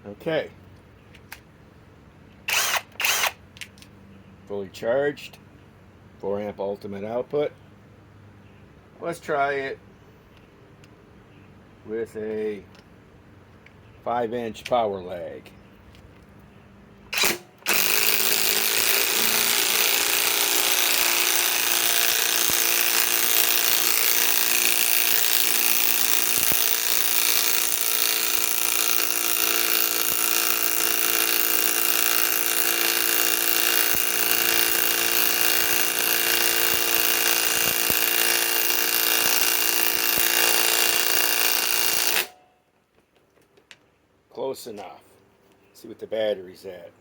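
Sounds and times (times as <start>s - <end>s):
impact wrench hammering: 17.2s - 42.4s.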